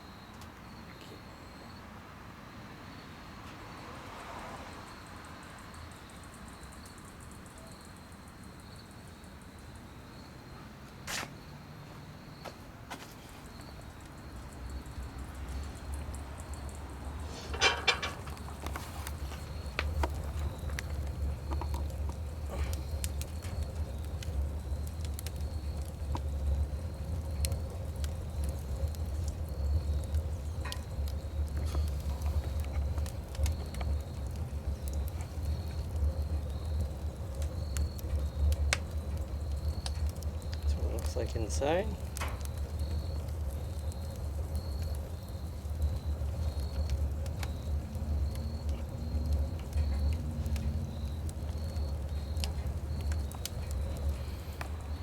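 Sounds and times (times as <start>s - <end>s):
insects chirping: 0.0s - 55.0s
steady low hiss: 11.0s - 55.0s
low fire rumble: 11.4s - 55.0s
fire crackling and popping: 12.4s - 55.0s.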